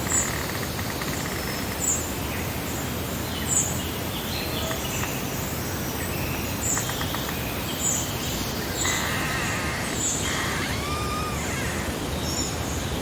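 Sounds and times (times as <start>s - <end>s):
steady background hiss: 0.0s - 13.0s
birds chirping and singing: 6.7s - 13.0s.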